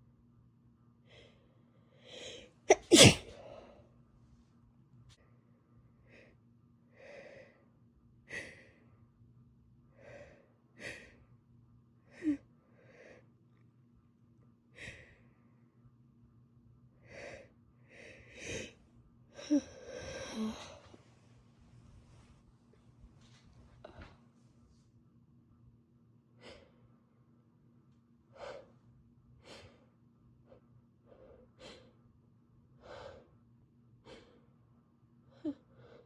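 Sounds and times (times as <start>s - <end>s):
woman sniffling: 2.1s - 3.7s, 19.4s - 20.9s
woman gasping: 19.4s - 21.0s.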